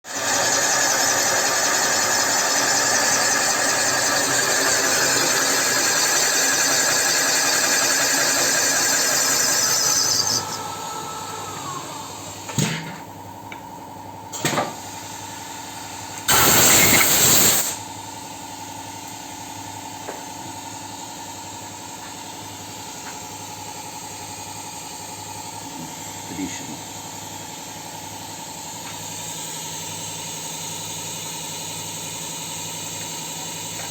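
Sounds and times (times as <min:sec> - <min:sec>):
workshop machine running: 0:00.1 - 0:13.2, 0:14.3 - 0:17.8
loud burst of hissing: 0:16.3 - 0:17.8.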